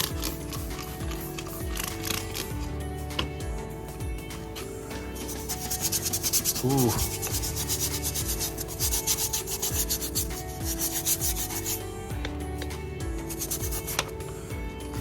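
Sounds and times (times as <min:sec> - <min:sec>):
stiff brush scrubbing: 0:05.2 - 0:11.8.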